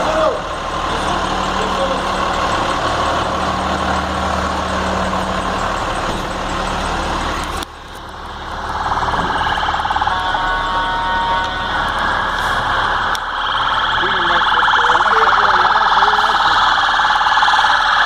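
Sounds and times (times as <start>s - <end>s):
fire engine engine rumbling: 0.0s - 18.0s
siren: 8.2s - 18.0s.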